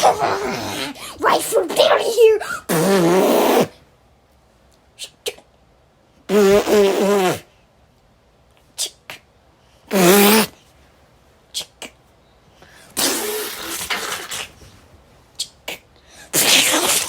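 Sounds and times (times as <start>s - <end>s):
child vocal sound effects: 0.0s - 2.9s.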